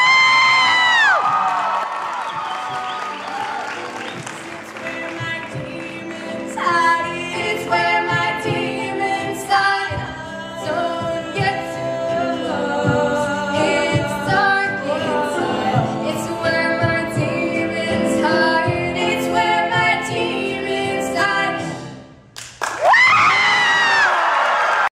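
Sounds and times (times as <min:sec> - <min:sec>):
loud scream: 0:00.0 - 0:03.8, 0:22.8 - 0:24.9
women singing a capella: 0:04.8 - 0:21.8.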